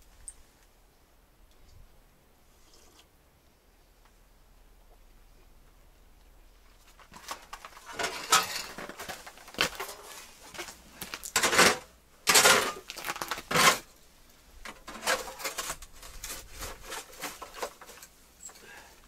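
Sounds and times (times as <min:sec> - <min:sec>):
rustling: 0:06.6 - 0:19.0
metal cookware clattering: 0:07.9 - 0:09.0.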